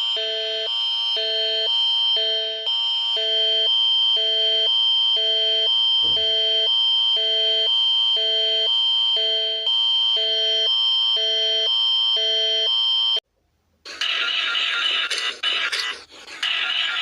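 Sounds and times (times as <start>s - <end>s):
electronic alarm tone: 0.0s - 13.2s.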